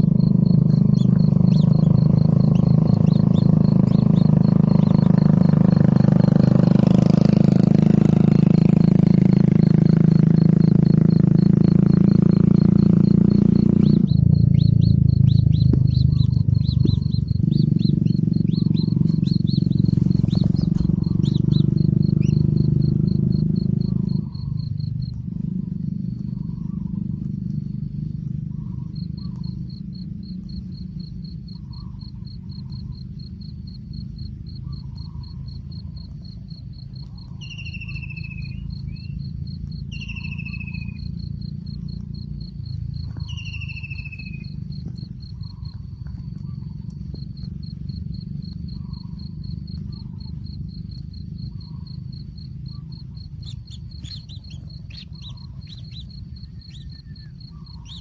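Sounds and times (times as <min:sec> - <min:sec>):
low rumble: 0:00.0 - 0:31.2
high-pitched insect trill: 0:00.0 - 0:58.0.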